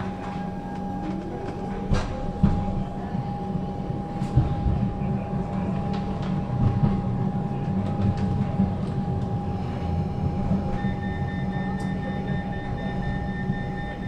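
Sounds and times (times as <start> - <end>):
train rumble and hum: 0.0 - 14.0
steady high tone: 8.5 - 14.0.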